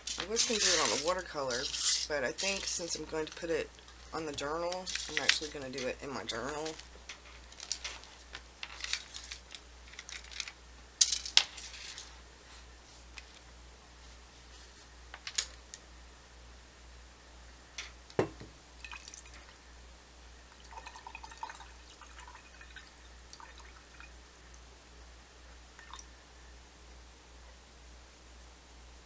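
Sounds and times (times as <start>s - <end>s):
small objects clicking on a desk: 1.6s - 12.1s.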